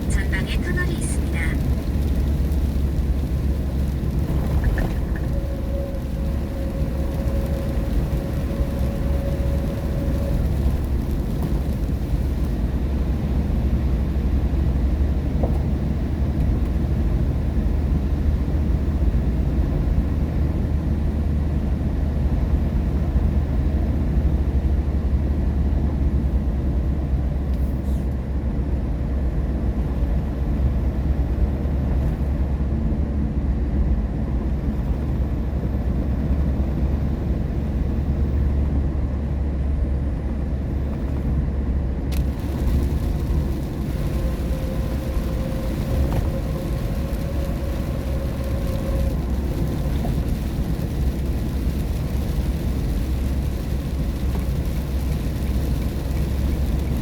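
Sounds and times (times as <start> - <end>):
tyre noise on wet road: 0.0 - 28.2, 40.7 - 57.0
car cabin road rumble: 0.0 - 57.0.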